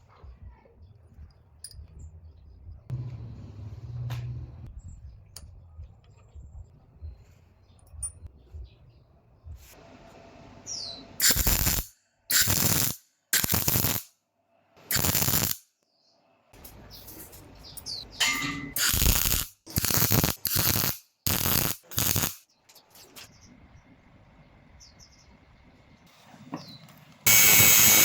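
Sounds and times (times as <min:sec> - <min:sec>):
workshop tool noise bursts: 0:11.2 - 0:14.1, 0:14.9 - 0:15.6, 0:18.2 - 0:22.4, 0:27.3 - 0:28.0.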